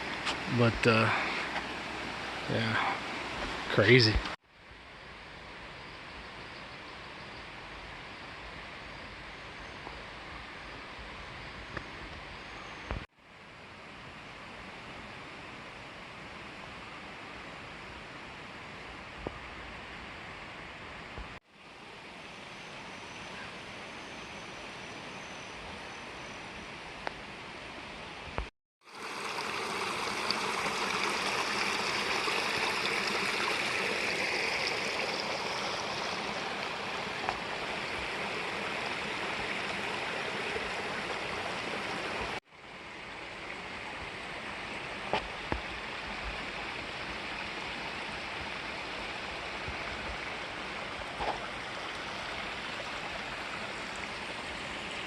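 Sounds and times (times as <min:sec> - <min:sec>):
river water rushing: 0:00.0 - 0:04.4, 0:28.8 - 0:55.0.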